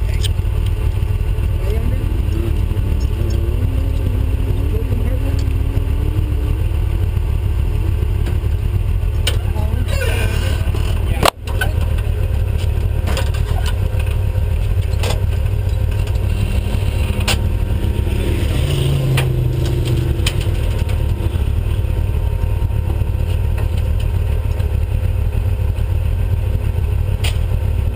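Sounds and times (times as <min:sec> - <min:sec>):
vehicle engine rumble: 0:00.0 - 0:27.9
chassis knocks and rattles: 0:10.4 - 0:17.5, 0:18.7 - 0:21.7.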